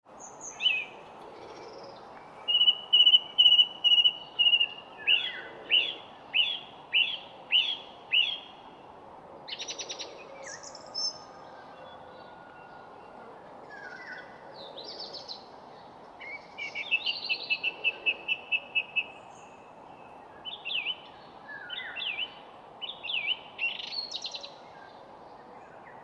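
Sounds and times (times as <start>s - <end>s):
background hiss: 0.1s - 11.6s
birds singing: 0.2s - 8.6s, 9.5s - 26.0s.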